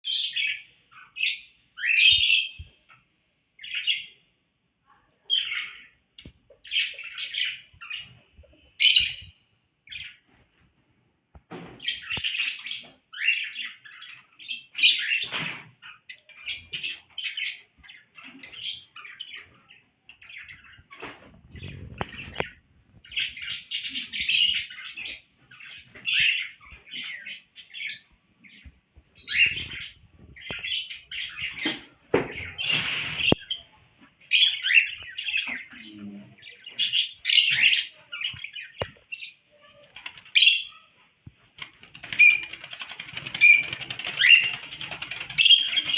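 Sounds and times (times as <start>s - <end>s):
parrots chirping and chattering: 5.3s - 10.2s, 11.8s - 45.9s
wings flapping: 39.9s - 40.4s, 41.6s - 45.9s.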